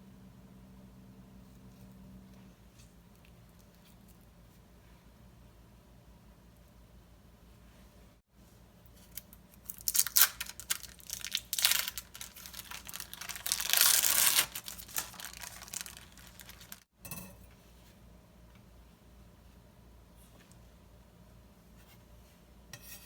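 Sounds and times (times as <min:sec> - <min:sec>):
food packaging clicks and crinkles: 0:09.0 - 0:16.9.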